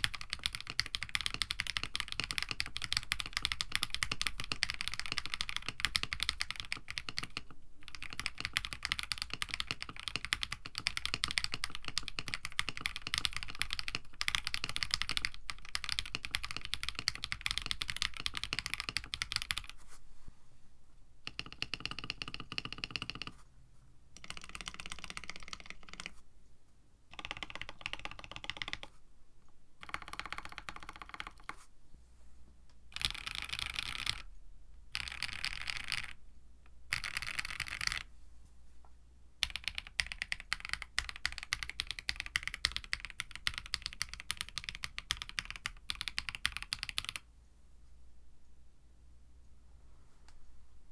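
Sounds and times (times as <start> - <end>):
mechanical keyboard typing: 0.0 - 19.8, 21.2 - 23.4, 24.2 - 26.2, 27.1 - 28.9, 29.8 - 31.6, 32.9 - 34.3, 34.9 - 36.2, 36.9 - 38.1, 39.4 - 47.3.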